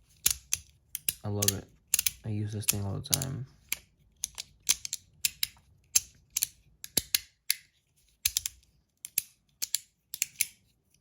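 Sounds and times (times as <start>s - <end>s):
magnetic fidget toy clicking: 0.2s - 3.4s.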